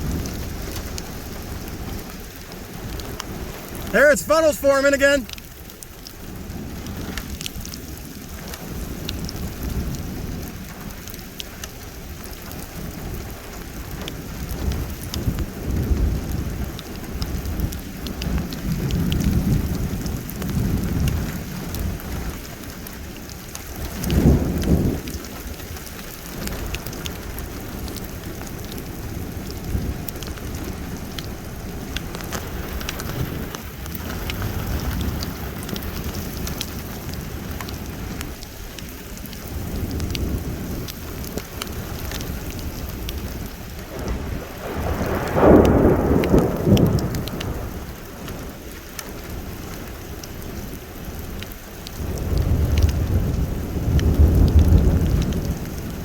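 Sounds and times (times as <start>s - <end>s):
rain pattering: 0.0s - 56.0s
thunder rumbling: 23.7s - 38.3s, 39.2s - 49.6s, 51.9s - 56.0s.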